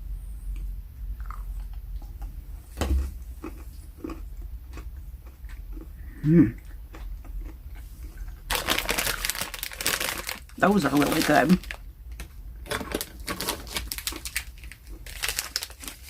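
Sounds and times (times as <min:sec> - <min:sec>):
close chewing with crunches: 0:03.3 - 0:10.2
short vocal hum: 0:06.1 - 0:06.6.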